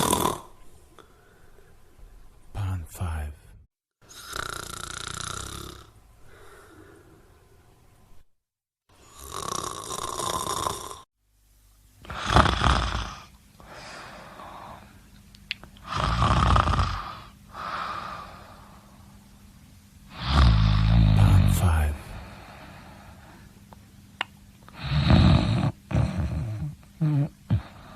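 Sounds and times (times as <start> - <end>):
person snoring: 0.0 - 1.1, 4.0 - 7.2, 9.0 - 11.1, 12.0 - 14.9, 15.8 - 18.8, 20.1 - 23.5, 24.7 - 27.9
soft breathing: 0.9 - 2.1, 6.2 - 7.7, 13.6 - 15.1, 22.0 - 23.6.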